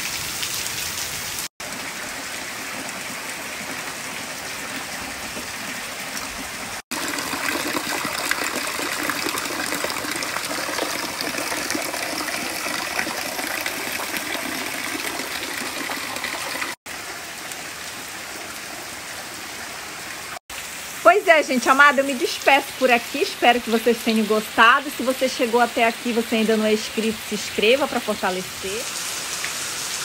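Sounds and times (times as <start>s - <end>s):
steady rain falling: 0.0s - 7.6s, 16.9s - 23.9s, 28.7s - 30.0s.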